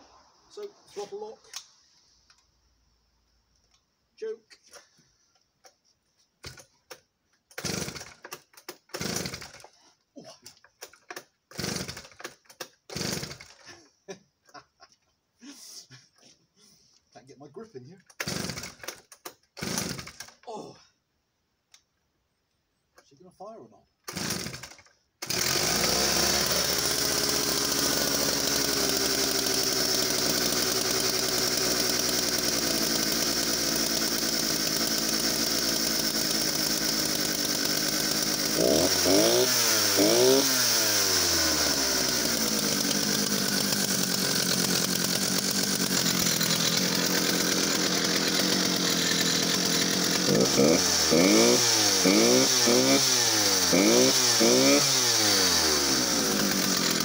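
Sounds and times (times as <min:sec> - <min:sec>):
chainsaw running and revving: 0:07.5 - 0:09.8, 0:11.5 - 0:13.8, 0:18.2 - 0:19.0, 0:19.6 - 0:20.4, 0:24.1 - 0:57.0.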